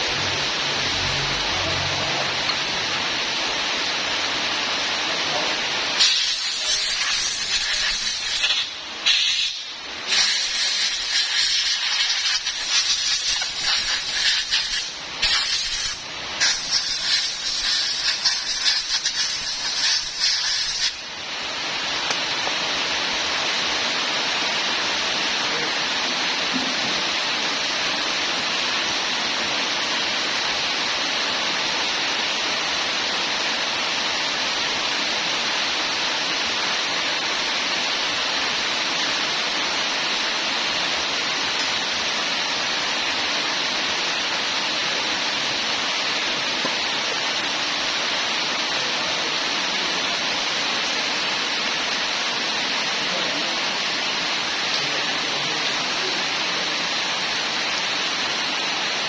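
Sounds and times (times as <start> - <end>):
hissing jet of spray: 6.0 - 21.1.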